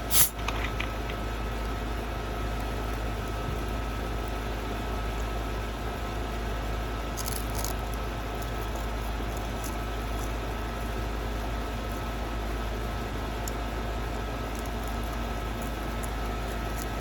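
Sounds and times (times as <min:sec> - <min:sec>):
steady background hum: 0:00.0 - 0:17.0
crisp crackles: 0:07.1 - 0:10.6, 0:13.2 - 0:17.0.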